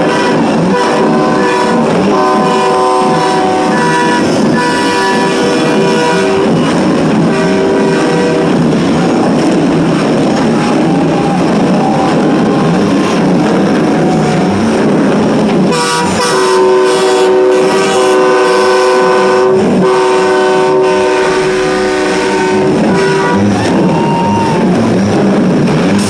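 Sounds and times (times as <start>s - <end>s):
truck horns blaring: 0.0s - 25.2s
multi-note horn chord: 15.7s - 23.5s.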